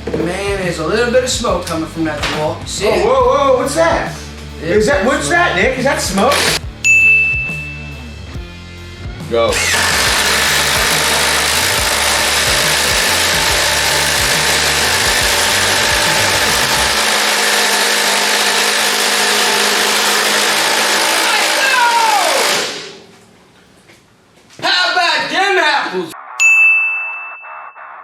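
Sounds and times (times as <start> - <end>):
impact drivers hammering: 6.2 - 6.6, 9.5 - 23.1
motor whine: 6.2 - 6.6, 9.5 - 23.0.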